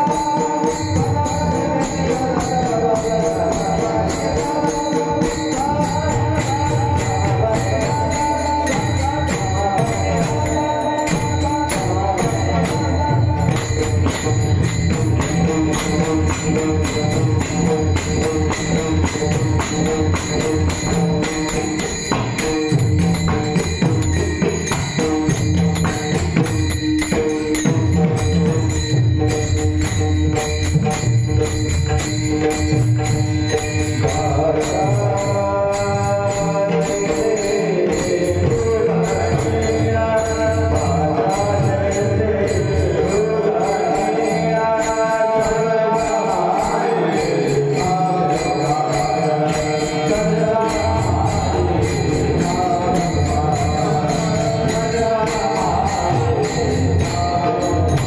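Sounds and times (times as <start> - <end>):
hand drum: 0.0 - 35.2
jingling hand cymbals: 0.0 - 58.0
person singing devotional song: 0.0 - 58.0.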